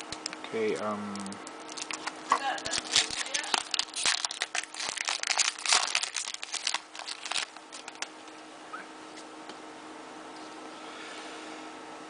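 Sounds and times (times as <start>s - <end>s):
wrapper being torn and crinkled: 1.2s - 8.1s.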